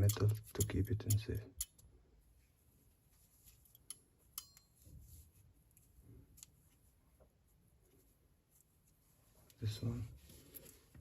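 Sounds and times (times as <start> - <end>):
faint handling noise: 0.0 - 11.0.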